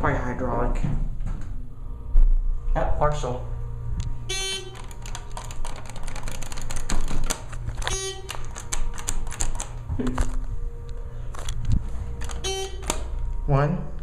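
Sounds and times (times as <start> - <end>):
elevator hum: 0.0 - 14.0
short pitched tones: 4.3 - 5.0, 7.8 - 8.5, 12.2 - 13.2.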